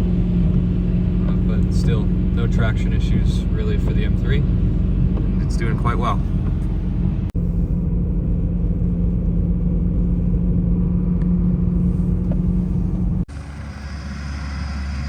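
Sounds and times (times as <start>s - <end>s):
car engine drone: 0.0s - 15.0s
low rumble with hiss: 0.0s - 15.0s
tyre and road noise: 0.0s - 15.0s.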